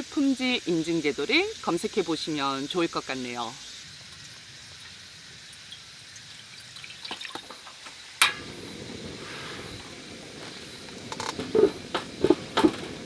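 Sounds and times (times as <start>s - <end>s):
gas stove hissing: 0.0s - 13.0s
stove igniter click: 8.2s - 8.7s.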